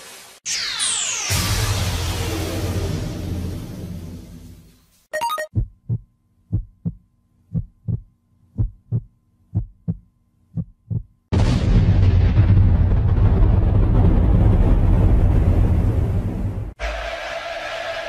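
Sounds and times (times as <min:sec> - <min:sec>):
electronic blip: 0:05.2 - 0:05.5
heartbeat thumps: 0:05.5 - 0:11.2.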